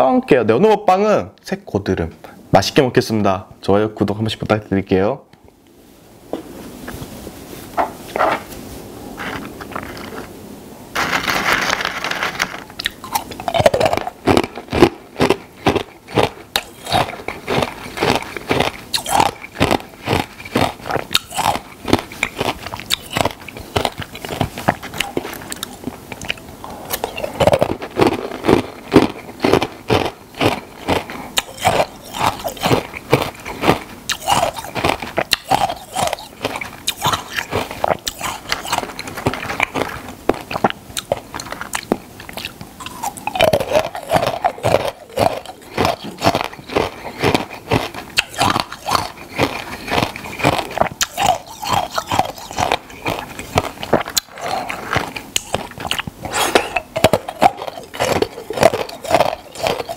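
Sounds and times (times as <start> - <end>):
crunchy chewing: 11.0 - 59.9.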